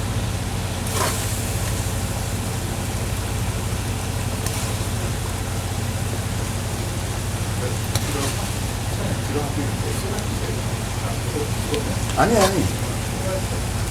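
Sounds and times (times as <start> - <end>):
constant low hum: 0.0 - 13.9
food hissing in a pan: 0.8 - 9.4.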